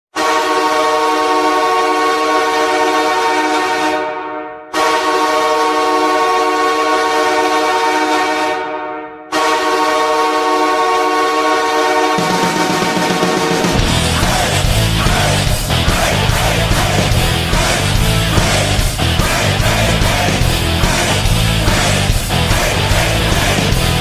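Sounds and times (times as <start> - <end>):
ice hockey goal horn: 0.1 - 24.0.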